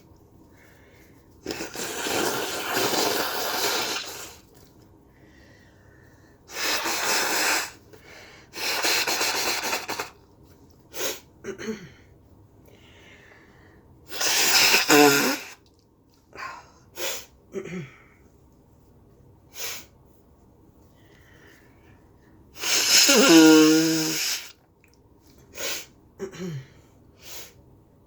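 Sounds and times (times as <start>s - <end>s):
person sneezing: 14.1s - 15.6s, 22.6s - 24.5s.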